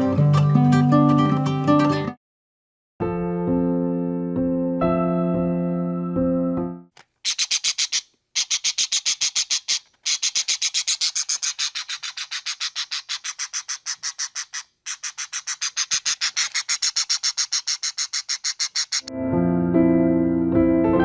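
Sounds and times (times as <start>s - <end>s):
animal clicking trill: 7.3s - 19.1s.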